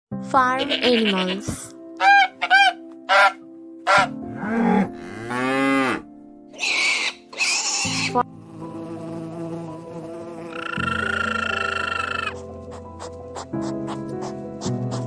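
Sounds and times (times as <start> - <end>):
background music: 0.1 - 15.0
farm animal calls: 0.6 - 1.4, 2.0 - 4.2, 10.5 - 12.4
cow mooing: 4.0 - 6.0, 10.2 - 12.4.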